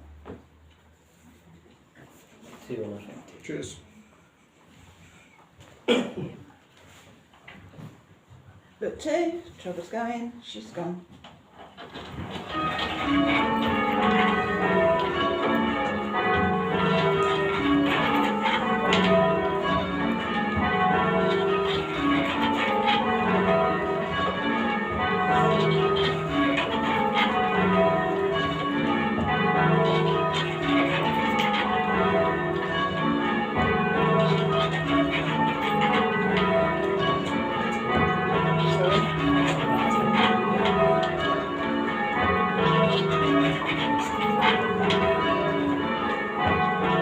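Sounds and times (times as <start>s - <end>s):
church bells change ringing: 12.0s - 47.0s.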